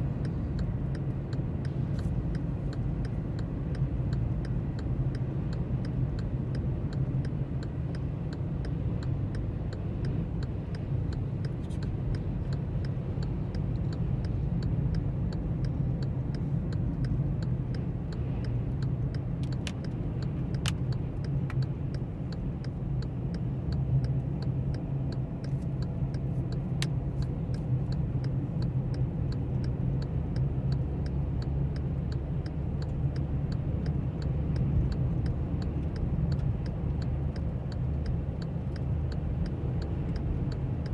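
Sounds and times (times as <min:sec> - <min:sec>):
car engine and road rumble: 0:00.0 - 0:40.9
regular ticking: 0:00.0 - 0:40.9
sharp clicks: 0:15.6 - 0:30.5.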